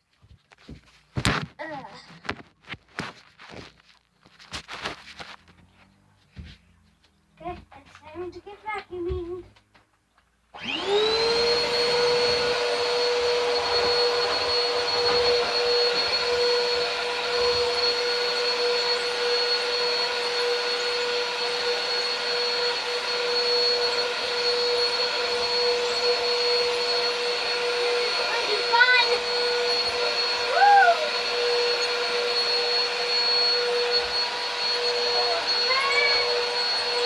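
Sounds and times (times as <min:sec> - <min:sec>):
upright vacuum cleaner whine: 0:10.5 - 0:37.0.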